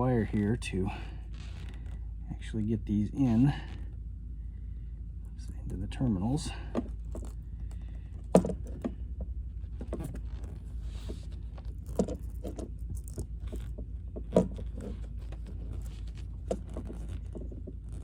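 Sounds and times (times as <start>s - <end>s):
steady low rumble: 0.0s - 18.0s
clicks and rattles of wires: 6.5s - 18.0s.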